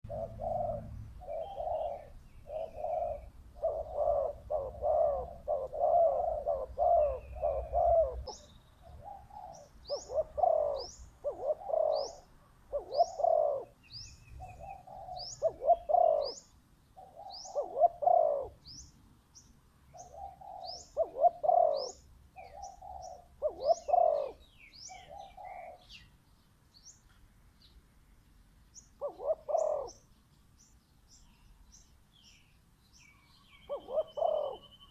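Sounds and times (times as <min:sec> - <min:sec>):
dove cooing: 0:00.0 - 0:18.8, 0:19.9 - 0:26.1, 0:29.0 - 0:30.1, 0:33.4 - 0:34.9
small bird chirping: 0:00.0 - 0:34.9.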